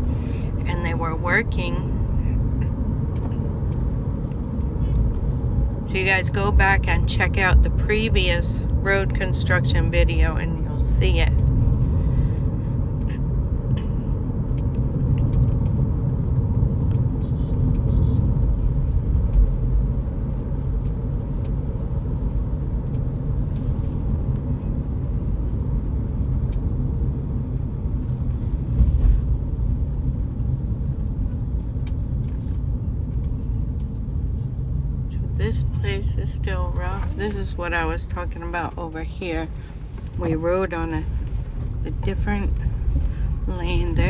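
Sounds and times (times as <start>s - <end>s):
car road and engine rumble: 0.0s - 44.0s.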